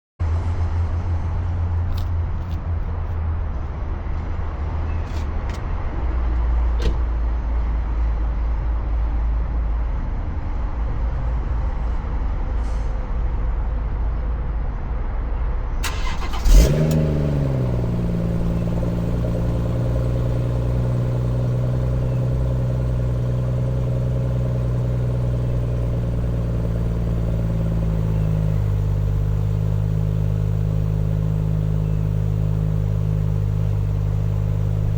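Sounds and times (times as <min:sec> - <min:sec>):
car engine starting and idling: 0:15.8 - 0:34.9
steady low rumble: 0:16.8 - 0:34.9.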